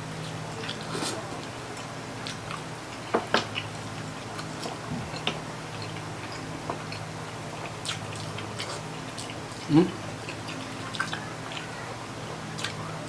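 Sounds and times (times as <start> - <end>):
steady low hum: 0.0 - 13.0
person chewing with mouth smacks: 3.3 - 11.7, 12.6 - 12.8.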